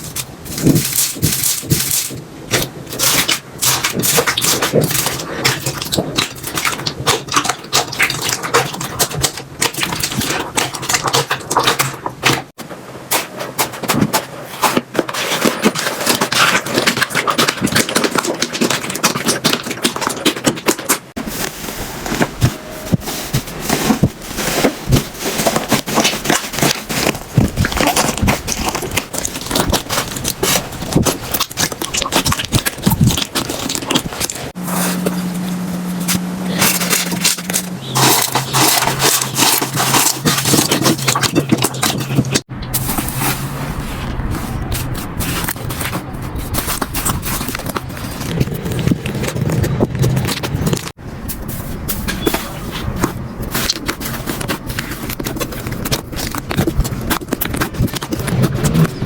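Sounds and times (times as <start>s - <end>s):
slime crackling and popping: 0.0s - 12.6s, 13.9s - 34.6s, 36.5s - 43.0s, 53.0s - 59.0s.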